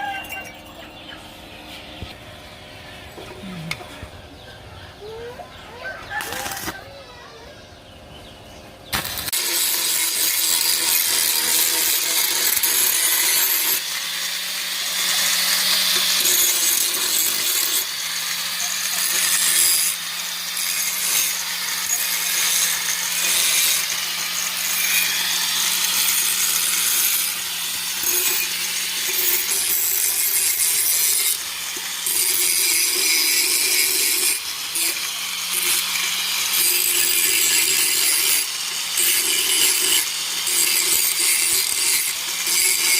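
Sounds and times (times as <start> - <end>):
power tool motor hum: 6.1 - 6.8, 8.8 - 42.9
harsh hissing metal grind: 8.9 - 42.9.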